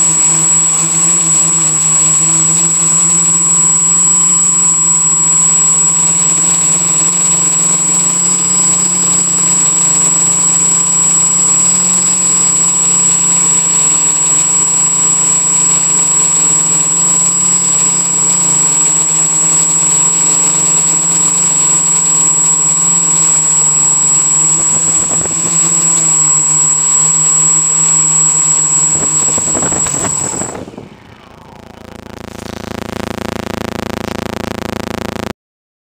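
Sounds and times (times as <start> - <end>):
quadcopter motors droning: 0.0 - 34.1.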